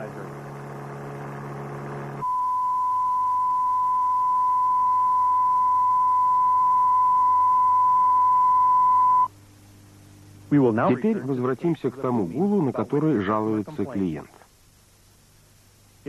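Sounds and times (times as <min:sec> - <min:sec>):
pure test tone: 0:00.0 - 0:09.3
low buzzing hum: 0:00.0 - 0:16.0.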